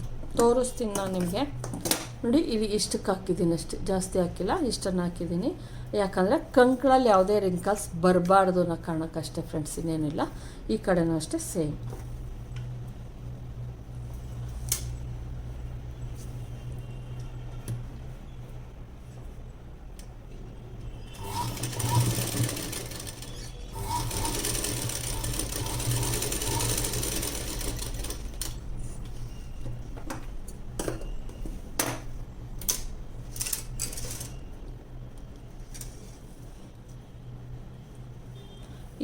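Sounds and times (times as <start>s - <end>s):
sewing machine stitching: 21.1s - 28.6s.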